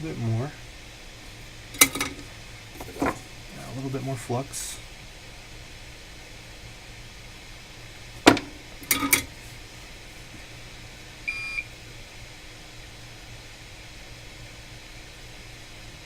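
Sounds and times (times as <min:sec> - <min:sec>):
tools clicking: 0:08.8 - 0:09.3
short electronic beep: 0:11.3 - 0:11.6.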